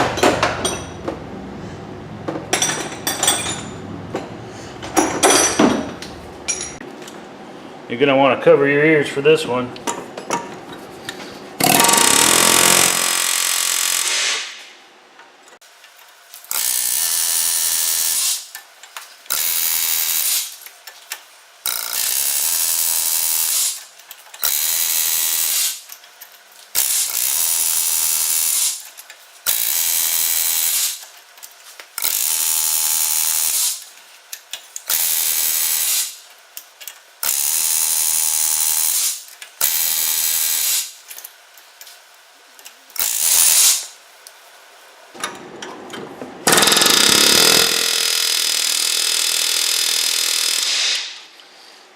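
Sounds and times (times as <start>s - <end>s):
pneumatic air hammer chiseling: 11.6s - 14.7s, 16.4s - 18.5s, 19.3s - 20.6s, 21.6s - 25.9s, 26.7s - 31.0s, 32.0s - 33.8s, 34.8s - 36.2s, 37.2s - 41.0s, 43.0s - 43.9s, 46.4s - 51.3s.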